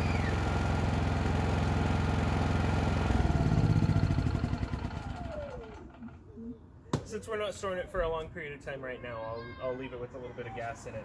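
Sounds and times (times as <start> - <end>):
generator running and winding down: 0.0 - 6.2.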